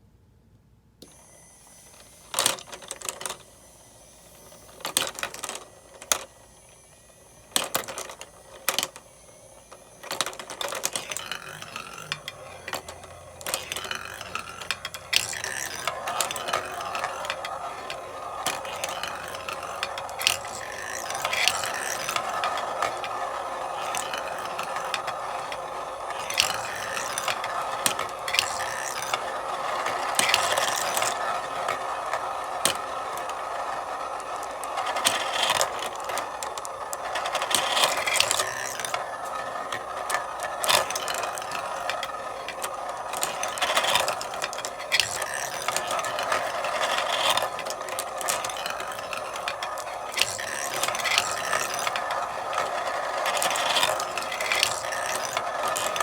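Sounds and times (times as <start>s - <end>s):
marbles rolling rattle: 4.5s - 6.6s, 7.4s - 56.0s
marbles clacking on a run: 10.0s - 56.0s.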